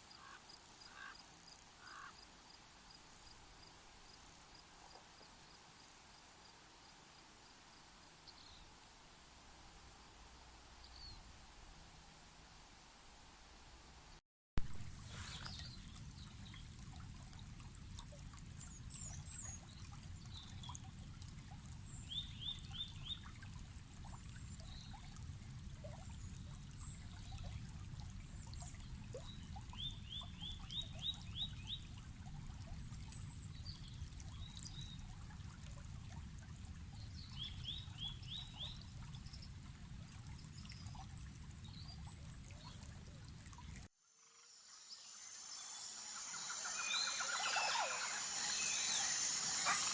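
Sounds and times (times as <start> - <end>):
trickling water: 14.6 - 49.9
high bird chirps: 45.0 - 49.9.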